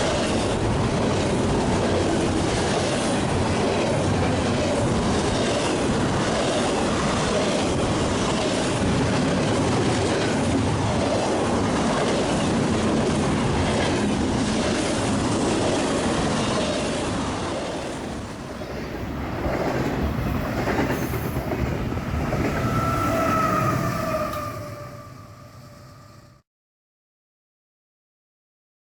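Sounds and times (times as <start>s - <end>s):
freight train wheels clattering: 0.0s - 26.1s
steady rising tone: 17.6s - 26.4s.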